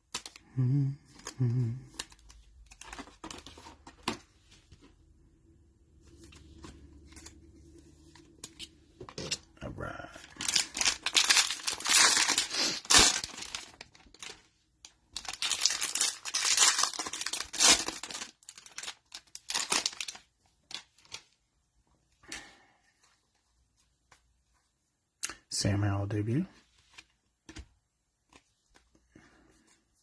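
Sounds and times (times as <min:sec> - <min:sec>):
plastic wrapper tearing and crinkling: 0:00.0 - 0:00.4, 0:01.9 - 0:03.8, 0:10.2 - 0:21.3.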